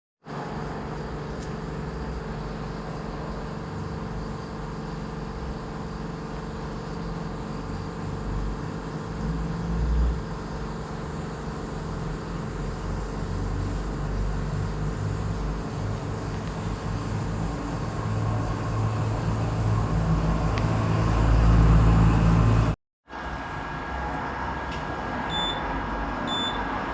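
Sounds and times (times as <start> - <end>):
low machine hum and rumble: 0.3 - 26.8.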